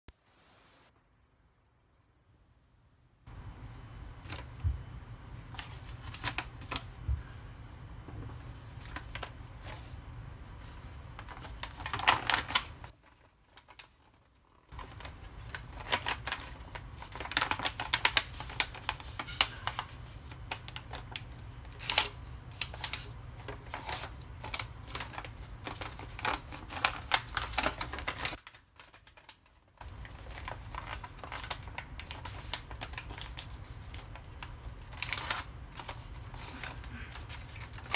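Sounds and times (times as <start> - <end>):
steady low hum: 2.8 - 11.7
paper rustling and crackling: 4.2 - 4.7, 5.5 - 7.2, 8.2 - 37.9.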